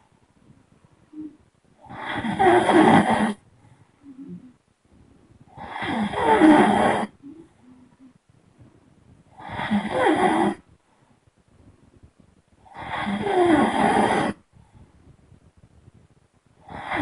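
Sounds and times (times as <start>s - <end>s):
soft breaths: 0.0s - 17.0s
person snoring: 1.1s - 3.4s, 5.5s - 8.1s, 9.4s - 10.6s, 12.6s - 14.4s, 16.6s - 17.0s.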